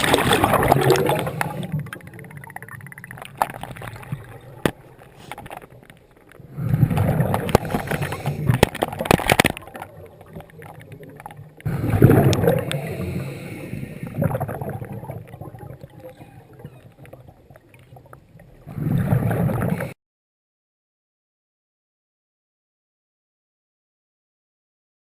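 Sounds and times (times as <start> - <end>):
underwater exhaled bubbles: 0.0 - 20.0.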